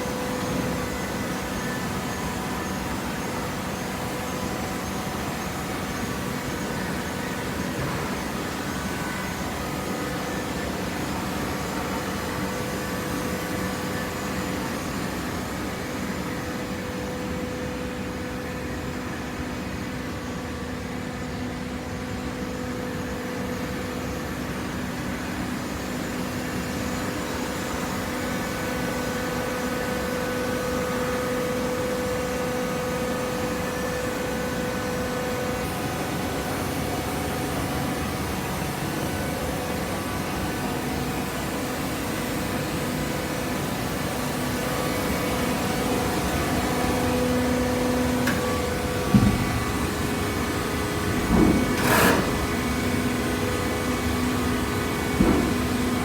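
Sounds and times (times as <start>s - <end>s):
baler machine humming: 43.5s - 56.0s.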